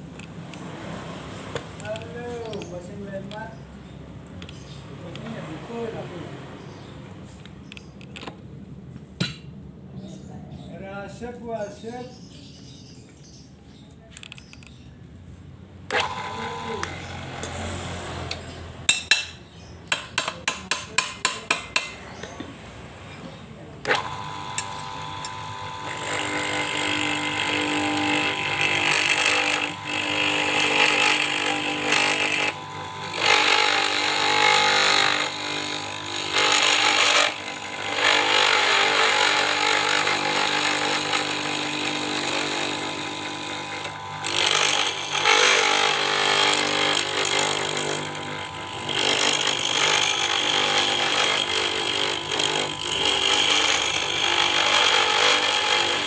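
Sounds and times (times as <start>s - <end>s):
cutting tool scraping pipe: 15.9s - 18.6s, 23.9s - 56.0s
lathe motor running: 15.9s - 18.9s, 23.9s - 56.0s.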